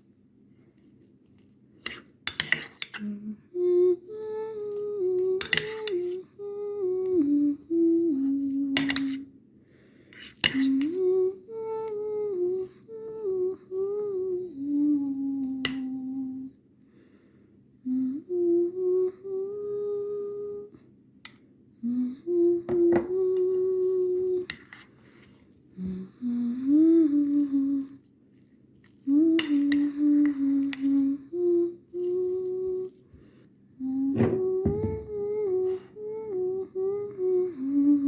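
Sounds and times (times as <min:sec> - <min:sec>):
utensils clicking on dish: 0:01.9 - 0:03.1, 0:05.4 - 0:06.2, 0:08.8 - 0:09.2, 0:10.2 - 0:10.8
hummed melody: 0:03.0 - 0:09.2, 0:10.6 - 0:16.6, 0:21.8 - 0:24.6, 0:29.1 - 0:33.0, 0:33.8 - 0:38.0.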